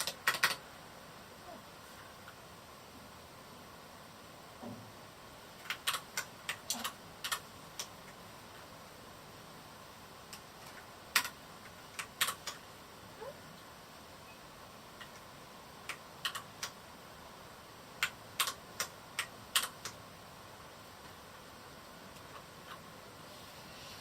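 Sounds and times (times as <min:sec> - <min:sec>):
mechanical keyboard typing: 0:00.0 - 0:00.6, 0:05.6 - 0:07.9, 0:10.3 - 0:12.6, 0:15.9 - 0:16.8, 0:18.0 - 0:20.0.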